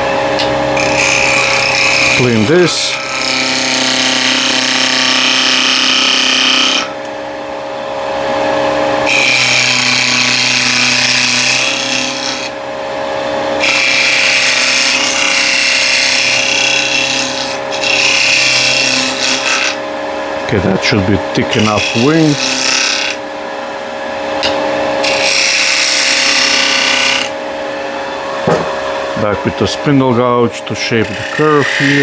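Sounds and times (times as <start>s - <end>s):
wood lathe humming: 0.0s - 32.0s
turning tool scraping wood: 0.4s - 6.9s, 20.4s - 23.2s, 29.2s - 32.0s.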